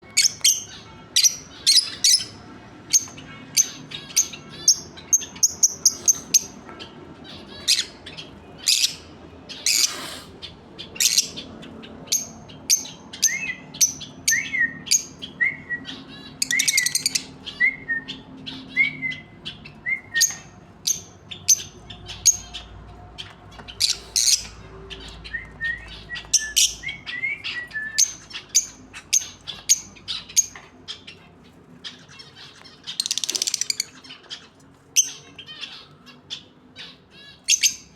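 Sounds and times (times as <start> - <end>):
lovebirds chirping shrilly: 0.0 - 37.9
lovebird harsh screeches: 9.6 - 10.4.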